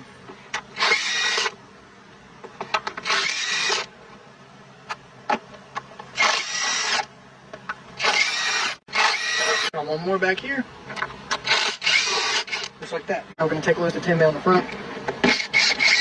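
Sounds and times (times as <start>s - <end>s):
impact wrench bursts: 0.8s - 1.5s, 3.0s - 3.9s, 6.2s - 7.1s, 8.0s - 9.7s, 11.3s - 12.7s, 15.3s - 16.0s.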